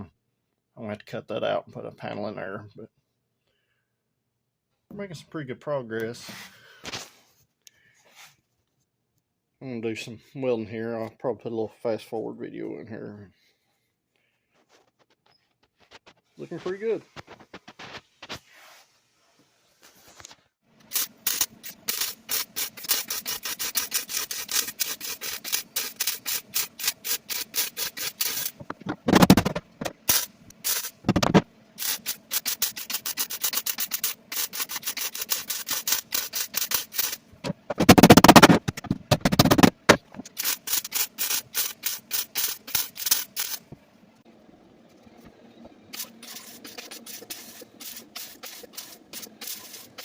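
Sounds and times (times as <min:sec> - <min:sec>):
welding crackle: 0:20.9 - 0:39.6, 0:40.2 - 0:43.7.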